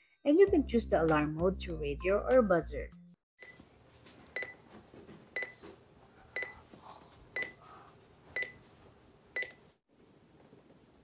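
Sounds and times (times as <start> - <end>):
alarm clock beeping: 4.4 - 4.6, 5.4 - 5.6, 6.4 - 6.6, 7.4 - 7.6, 8.4 - 8.6, 9.4 - 9.6.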